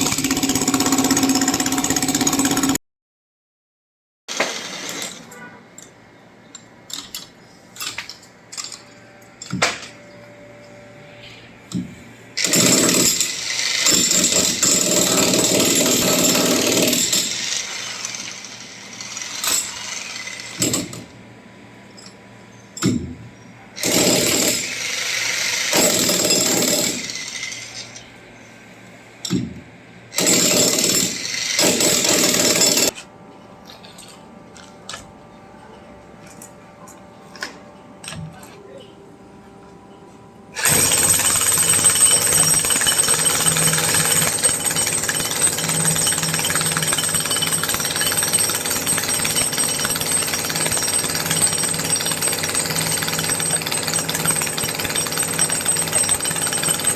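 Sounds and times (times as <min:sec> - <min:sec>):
hammer drill breaking concrete: 0:00.0 - 0:02.8, 0:12.4 - 0:18.3, 0:23.8 - 0:27.3, 0:30.2 - 0:33.0, 0:40.6 - 0:56.9.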